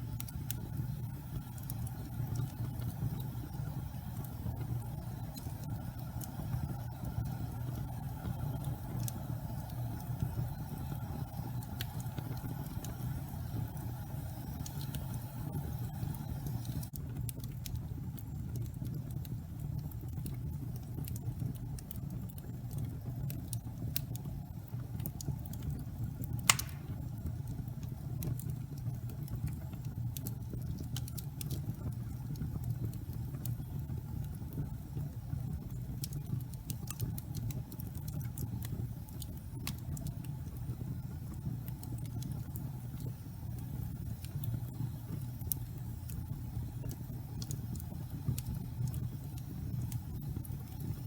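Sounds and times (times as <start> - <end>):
fire crackling: 0.0 - 51.0
fire flames rumbling: 0.0 - 51.0
loud fire pop: 26.5 - 27.0.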